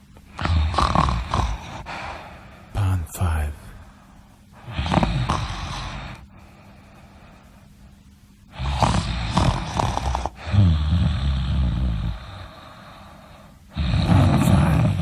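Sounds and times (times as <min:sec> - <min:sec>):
person snoring: 0:00.3 - 0:02.9, 0:04.6 - 0:06.3, 0:08.5 - 0:15.0.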